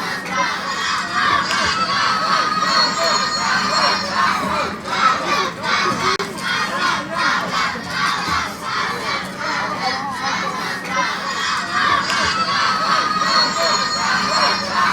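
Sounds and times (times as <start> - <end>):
crowd cheering and shouting: 0.0 - 14.9.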